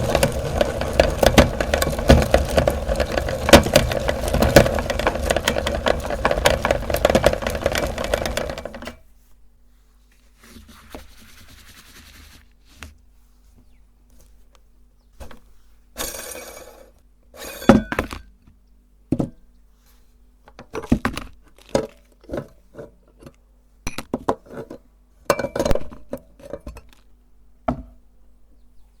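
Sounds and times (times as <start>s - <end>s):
hard objects clinking and knocking: 0.0s - 9.0s.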